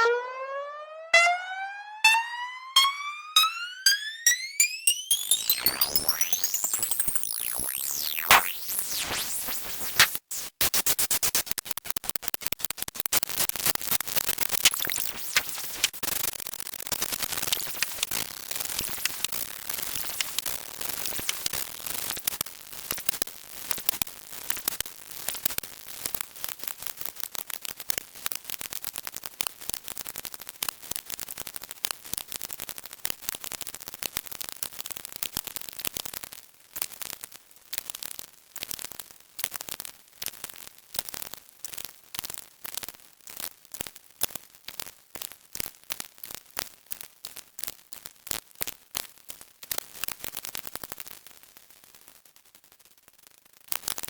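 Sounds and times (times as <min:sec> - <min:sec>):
sweeping synthesized tones: 0:00.0 - 0:09.6
short electronic sound effects: 0:00.0 - 0:10.2, 0:14.7 - 0:15.4.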